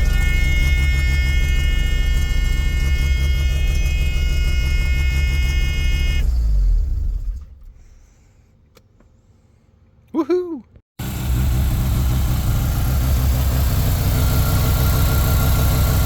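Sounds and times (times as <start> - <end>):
rotary engine idling with whine: 0.0 - 8.7, 11.0 - 16.0.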